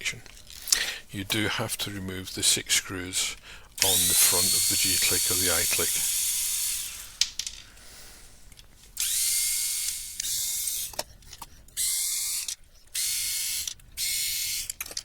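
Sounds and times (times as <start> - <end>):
electric screwdriver whirring: 3.8 - 7.5, 8.9 - 15.0.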